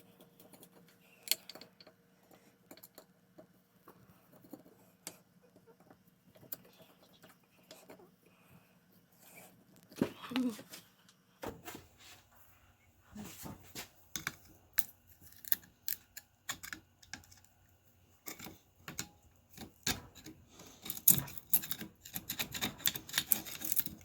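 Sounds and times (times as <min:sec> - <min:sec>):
small clicks and taps of hard parts: 0:00.4 - 0:02.0, 0:02.7 - 0:03.6, 0:14.1 - 0:17.6, 0:18.2 - 0:24.0.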